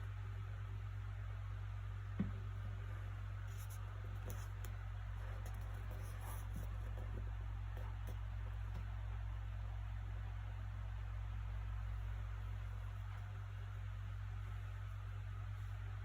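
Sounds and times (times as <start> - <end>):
low background hum: 0.0 - 16.0
soft knock: 2.2 - 2.4.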